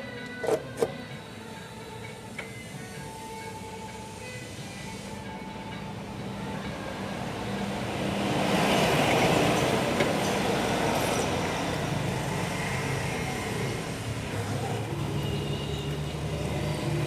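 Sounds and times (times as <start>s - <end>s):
vehicle engine with road rush: 4.2s - 17.0s.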